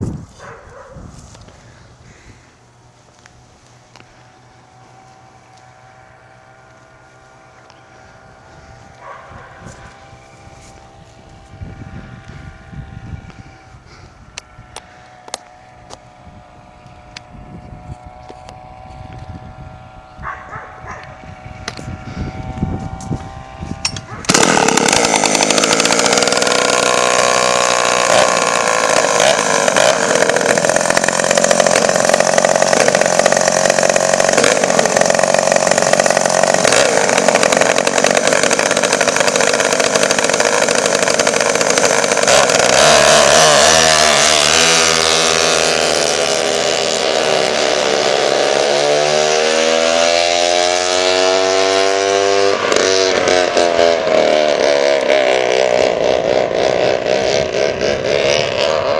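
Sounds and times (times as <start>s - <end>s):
chainsaw engines revving: 21.4s - 58.9s.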